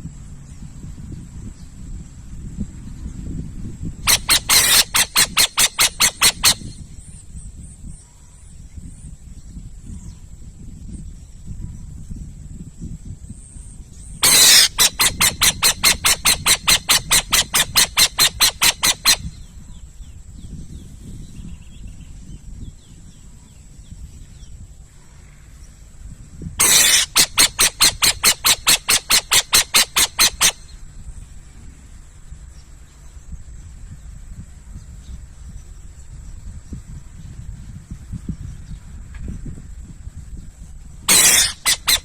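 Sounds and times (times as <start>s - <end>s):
owl screeching: 4.1s - 6.8s, 14.2s - 19.4s, 26.6s - 30.7s, 41.1s - 42.0s.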